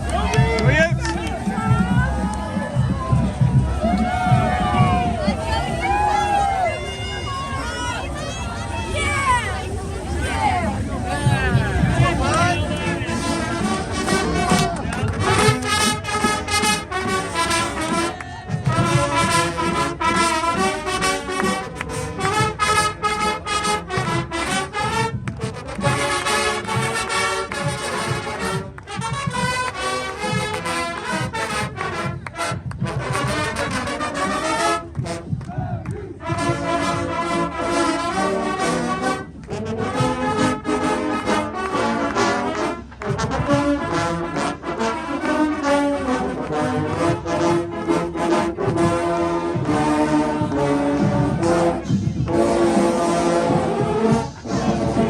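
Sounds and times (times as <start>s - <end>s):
steady drum beat: 0.0s - 6.6s, 11.1s - 37.3s
brass band playing: 0.0s - 55.0s.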